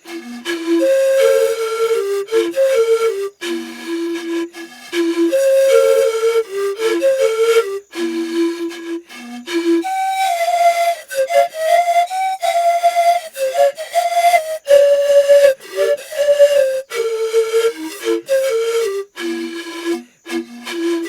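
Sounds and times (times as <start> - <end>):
flute-like solo melody: 0.0 - 21.0.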